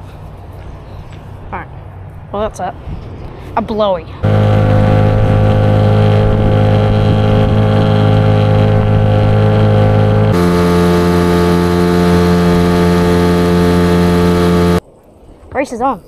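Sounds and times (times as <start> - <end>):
sustained synth chords: 4.2 - 14.8.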